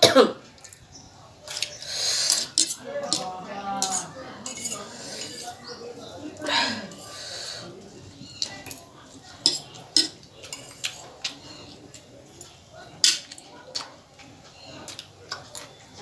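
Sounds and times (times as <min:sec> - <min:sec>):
cutlery clinking on a plate: 0:01.5 - 0:05.6, 0:08.4 - 0:11.3, 0:12.4 - 0:13.9.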